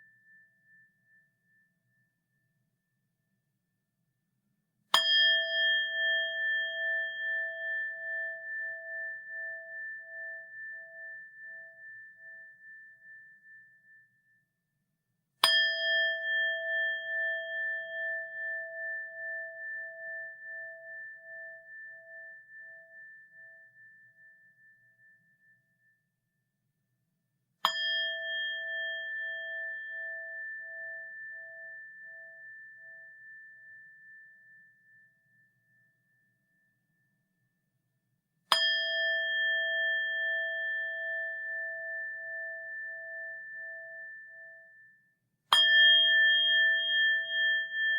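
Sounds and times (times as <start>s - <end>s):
bowl bell ringing: 5.0s - 14.2s, 15.4s - 25.5s, 27.7s - 35.3s, 38.5s - 44.9s, 45.5s - 47.9s.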